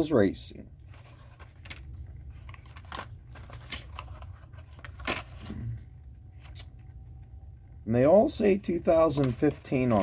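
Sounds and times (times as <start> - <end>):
cardboard rustling: 0.8 - 5.8
plastic blister packs crinkling: 0.9 - 5.8.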